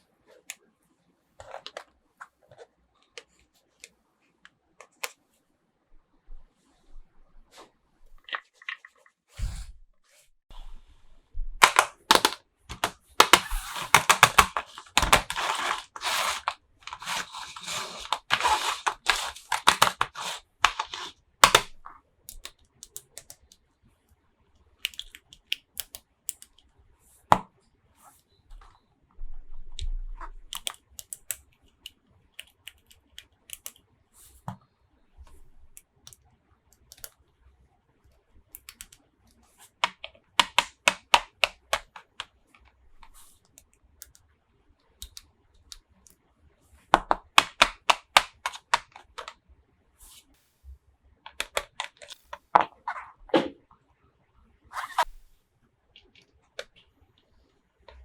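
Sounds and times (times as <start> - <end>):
plastic crinkling and tearing: 11.6 - 21.7
small plastic pieces clicking: 11.6 - 21.7.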